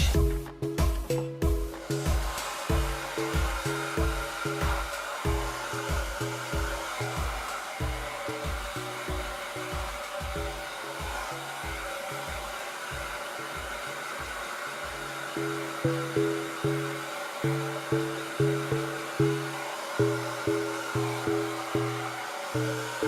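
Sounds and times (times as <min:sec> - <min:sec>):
music with bass beat: 0:00.0 - 0:15.0
hair dryer blowing: 0:00.0 - 0:23.0.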